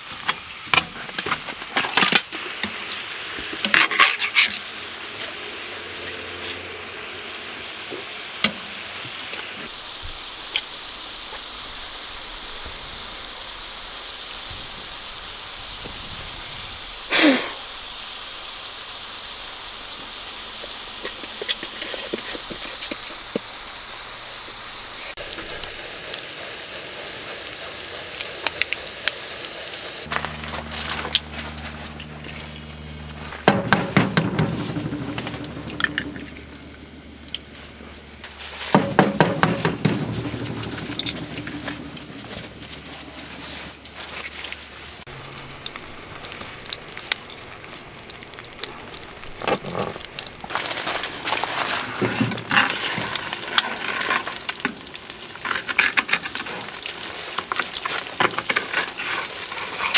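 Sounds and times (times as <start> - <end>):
low steady hum: 30.1 - 38.3, 45.1 - 51.7
spatula scraping a pan: 38.4 - 43.7.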